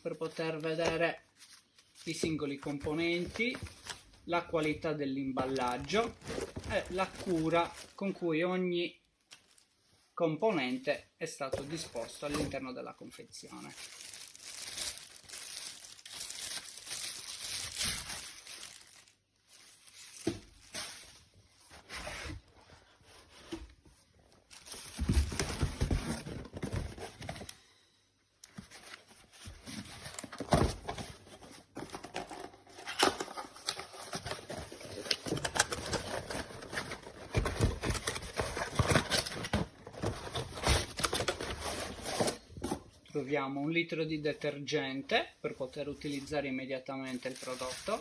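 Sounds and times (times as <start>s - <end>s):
packaging rustling and tearing: 0.3s - 4.7s, 5.3s - 8.2s, 13.4s - 22.5s, 24.4s - 27.6s, 28.4s - 42.8s, 47.1s - 48.0s.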